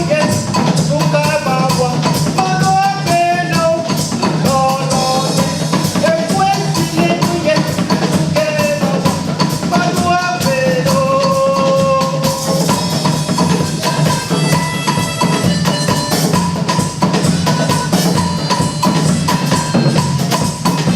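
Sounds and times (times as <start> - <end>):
busy drum beat: 0.0 - 20.9.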